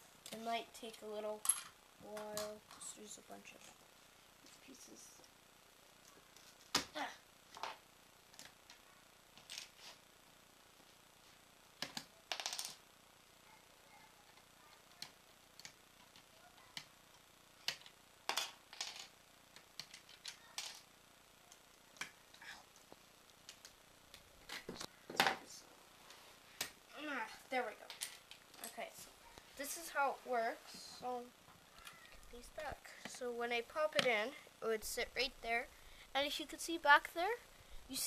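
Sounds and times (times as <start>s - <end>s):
plastic bricks clicking and snapping: 17.6s - 20.8s.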